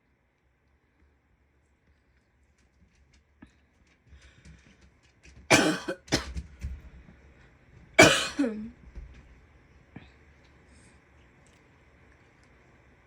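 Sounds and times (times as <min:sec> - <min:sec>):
woman coughing: 0:05.5 - 0:06.4, 0:08.0 - 0:08.7.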